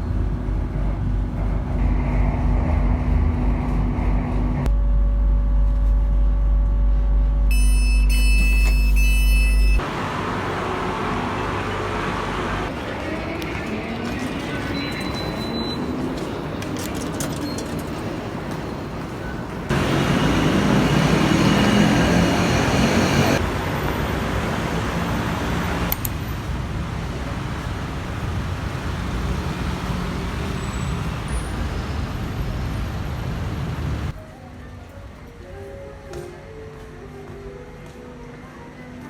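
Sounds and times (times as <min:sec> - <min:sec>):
traffic rumble: 0:00.0 - 0:07.4, 0:09.0 - 0:34.2.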